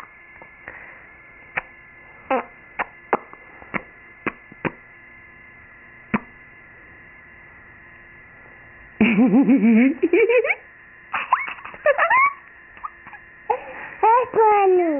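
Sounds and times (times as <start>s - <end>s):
faint steady hum: 0.0s - 14.9s.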